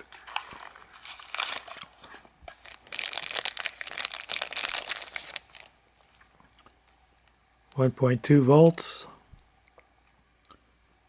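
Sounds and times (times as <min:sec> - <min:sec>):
plastic packaging crinkling: 0:00.0 - 0:06.7.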